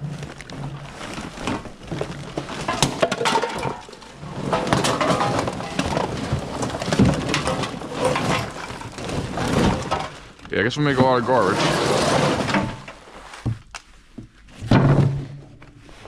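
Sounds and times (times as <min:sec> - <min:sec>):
plastic bags crinkling: 0:00.0 - 0:11.8
knocks and bumps: 0:00.0 - 0:15.6.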